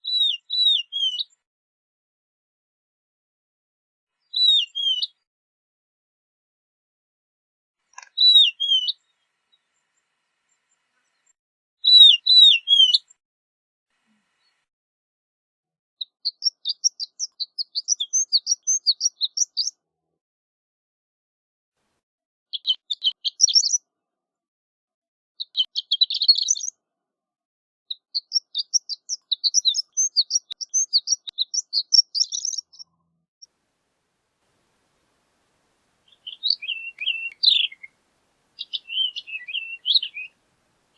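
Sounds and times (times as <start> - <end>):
bird twittering song: 0.0 - 1.4, 4.3 - 5.2, 8.0 - 9.1, 11.1 - 13.1, 16.0 - 19.7, 22.6 - 23.8, 25.4 - 26.7, 27.9 - 32.9, 36.0 - 40.9.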